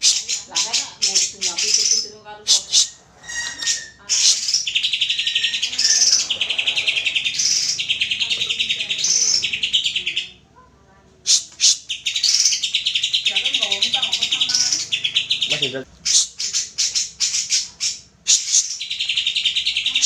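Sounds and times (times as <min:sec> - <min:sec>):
bird singing buzzy trills: 0:00.0 - 0:10.4, 0:11.2 - 0:20.0
sharp bird notes: 0:00.0 - 0:10.4.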